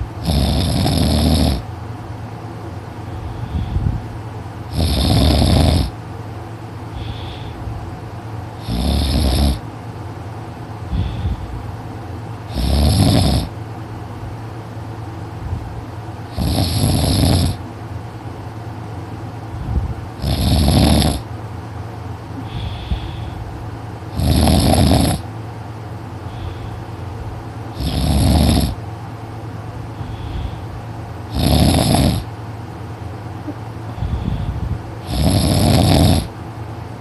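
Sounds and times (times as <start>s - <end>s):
boy snoring loudly: 0.2s - 1.6s, 4.7s - 5.9s, 8.6s - 9.6s, 12.5s - 13.5s, 16.3s - 17.6s, 20.2s - 21.2s, 24.2s - 25.2s, 27.8s - 28.8s, 31.3s - 32.3s, 35.0s - 36.3s.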